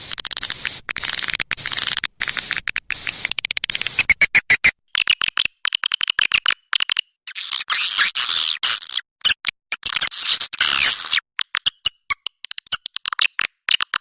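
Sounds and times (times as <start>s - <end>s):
swiftlets chirping: 0.0s - 4.7s.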